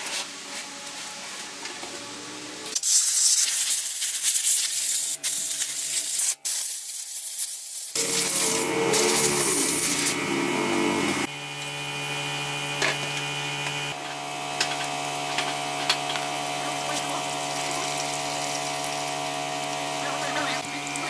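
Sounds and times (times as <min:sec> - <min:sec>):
small electric motor humming: 0:07.8 - 0:21.0.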